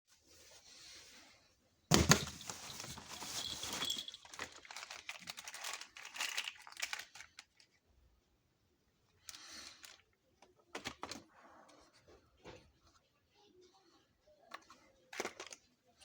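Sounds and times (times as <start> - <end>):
packaging crinkling: 1.9 - 7.6.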